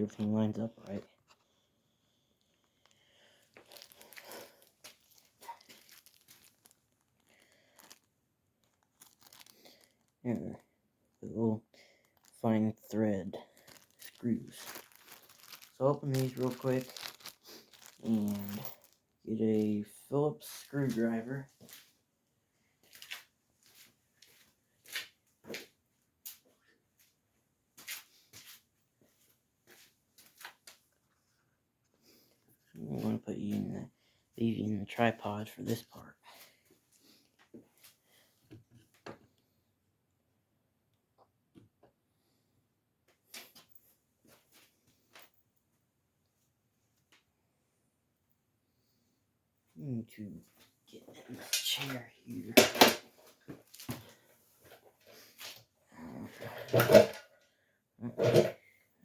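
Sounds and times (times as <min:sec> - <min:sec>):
crinkling rustles: 0:02.4 - 0:11.2, 0:11.8 - 0:22.0, 0:22.8 - 0:25.6, 0:50.4 - 0:55.7.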